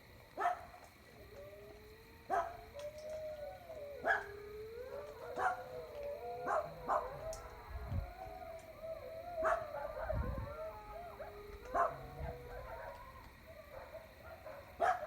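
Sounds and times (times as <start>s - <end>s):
dogs howling: 0.3s - 15.0s
dog barks: 0.4s - 0.8s, 2.3s - 2.6s, 5.3s - 5.7s, 6.4s - 7.5s, 9.4s - 10.1s, 11.2s - 13.0s, 13.7s - 15.0s.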